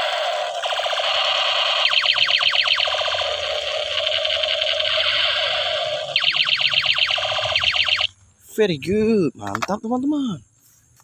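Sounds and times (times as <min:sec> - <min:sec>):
falling laser sweeps: 0:00.0 - 0:08.1
toy gun electronic buzzing rattle: 0:00.0 - 0:08.2.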